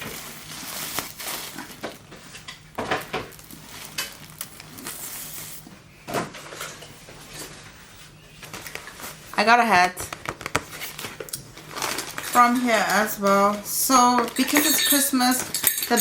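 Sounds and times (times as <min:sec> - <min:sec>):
bag and packaging rustling: 0:00.0 - 0:05.8, 0:10.4 - 0:16.0.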